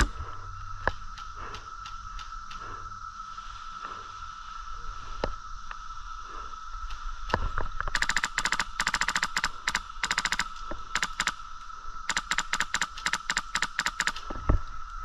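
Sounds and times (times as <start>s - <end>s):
airsoft gun firing rapid bursts: 8.0s - 11.4s, 12.1s - 14.2s.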